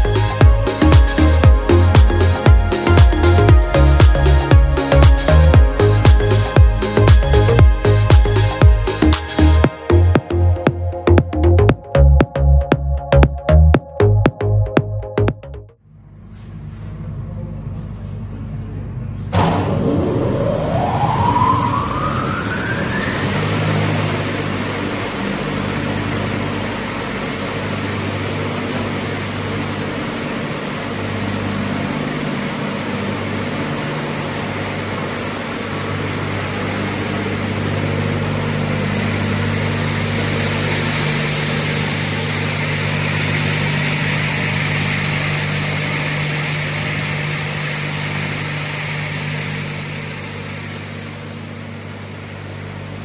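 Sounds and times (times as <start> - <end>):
rising whine: 0.0 - 16.1, 19.2 - 53.0
multi-rip saw humming and whirring: 19.4 - 53.0.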